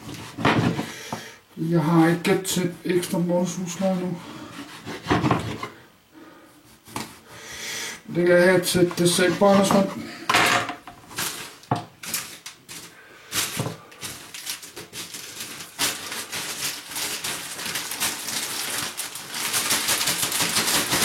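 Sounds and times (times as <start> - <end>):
rustling crackle: 11.0 - 21.0.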